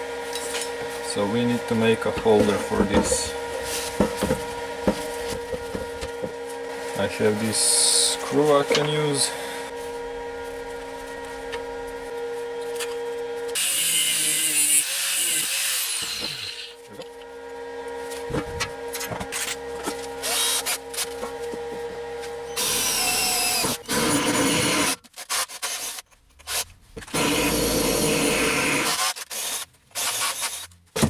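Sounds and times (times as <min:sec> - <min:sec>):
power tool grinding metal: 0:01.1 - 0:10.2, 0:13.6 - 0:16.9, 0:22.5 - 0:26.0.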